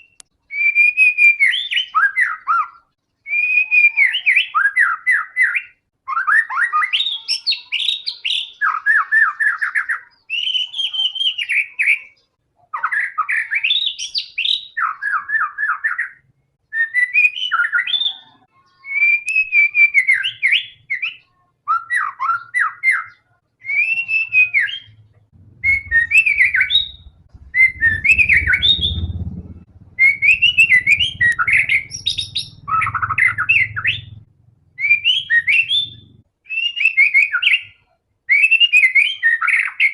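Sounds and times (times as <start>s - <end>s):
bird singing trills and whistles: 0.0s - 39.9s
faint low rumble: 24.7s - 36.3s.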